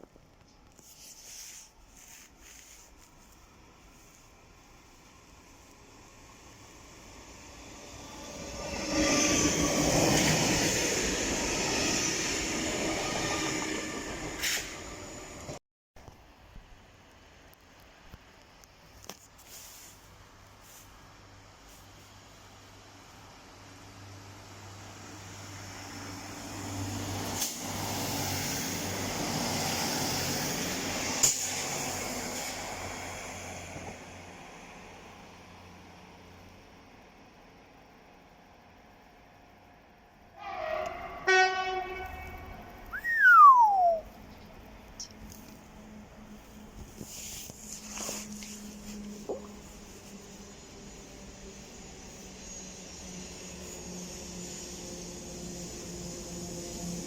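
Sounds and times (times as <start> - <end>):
train rumbling past: 3.5 - 15.6, 21.4 - 57.0
train wheels rumbling on rail: 6.2 - 15.6, 23.8 - 35.8.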